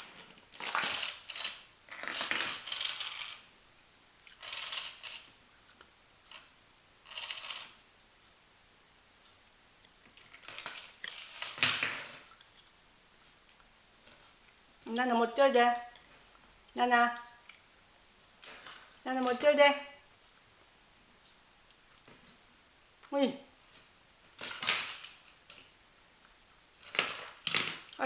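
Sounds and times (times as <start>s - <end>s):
toy clattering on hard floor: 0.0s - 3.4s.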